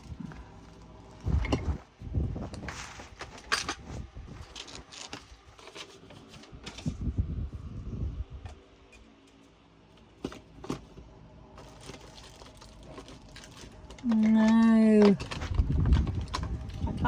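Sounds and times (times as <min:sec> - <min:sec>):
rummaging through plastic bags: 0:00.0 - 0:07.0, 0:11.6 - 0:17.0.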